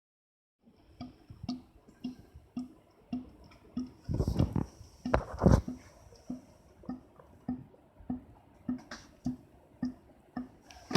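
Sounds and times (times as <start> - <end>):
hollow dripping in air conditioner: 0.6 - 10.9.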